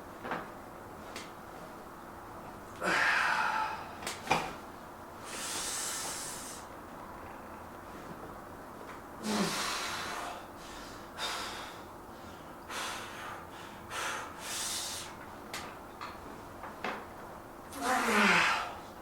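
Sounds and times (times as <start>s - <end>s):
man grunting: 2.8s - 3.8s, 9.2s - 9.7s, 17.8s - 18.8s
man exhaling forcefully: 2.8s - 4.0s, 9.2s - 10.4s, 17.8s - 18.8s.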